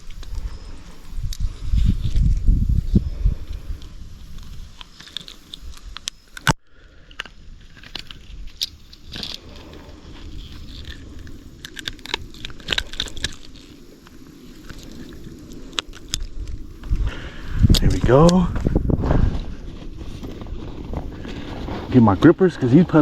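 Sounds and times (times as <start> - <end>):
handling clicks and scrapes: 3.5 - 23.0.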